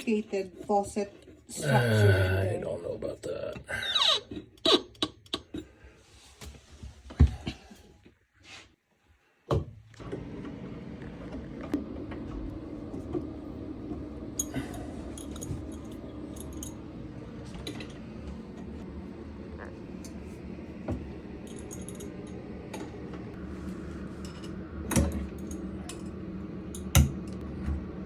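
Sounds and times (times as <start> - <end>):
steady low hum: 12.6 - 28.0.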